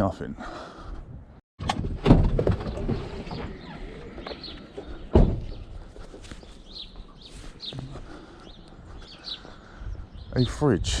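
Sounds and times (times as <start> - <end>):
small birds chirping: 2.6 - 11.0.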